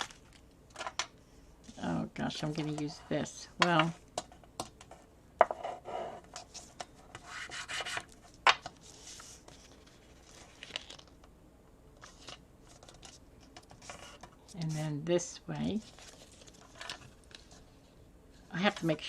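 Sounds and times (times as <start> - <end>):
paper rustling: 6.4 - 11.2, 12.0 - 14.8, 15.6 - 17.8.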